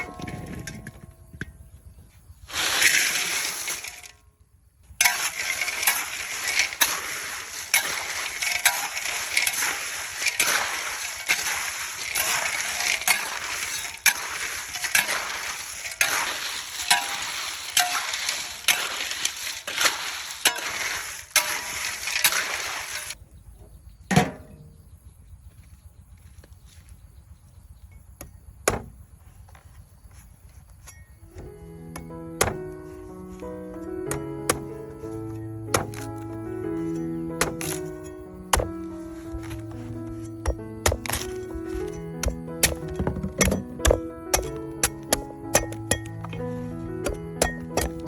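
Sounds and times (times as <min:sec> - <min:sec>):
clinks and knocks: 0:00.0 - 0:01.8, 0:07.6 - 0:19.7, 0:35.7 - 0:39.7, 0:40.3 - 0:48.0
water splashing: 0:05.0 - 0:23.2.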